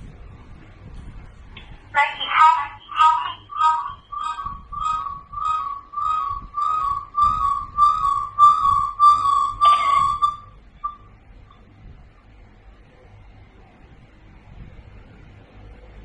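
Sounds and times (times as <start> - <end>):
doorbell intercom beeping: 9.2 - 11.0.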